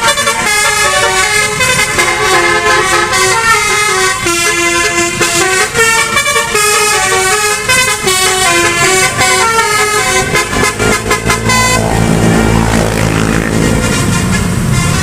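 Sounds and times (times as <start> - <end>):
musical bus horn melody: 0.0 - 15.0
deep horn drone with rumble: 8.0 - 15.0.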